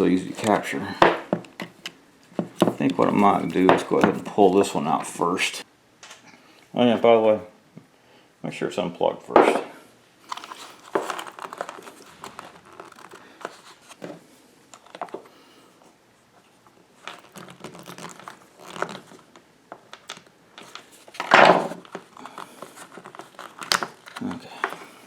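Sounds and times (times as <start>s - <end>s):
rustling: 0.2s - 4.7s, 10.2s - 25.0s
plastic clicks and scrapes: 1.4s - 4.2s, 10.3s - 15.3s, 17.0s - 25.0s.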